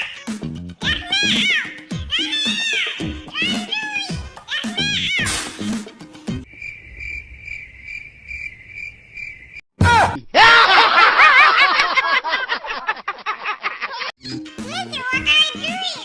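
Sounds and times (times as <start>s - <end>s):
cricket chirping: 6.4s - 9.6s.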